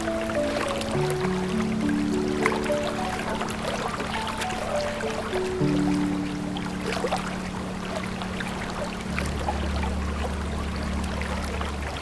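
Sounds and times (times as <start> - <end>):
long low instrumental notes: 0.0 - 12.0
water trickling and splashing: 0.0 - 12.0.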